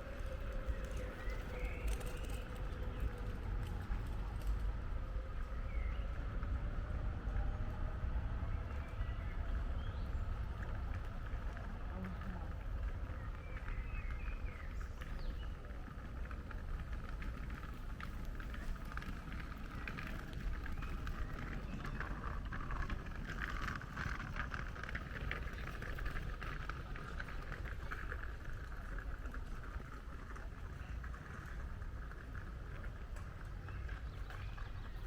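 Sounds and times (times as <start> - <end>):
small clicks and crackles: 0.0 - 5.6, 10.2 - 35.0.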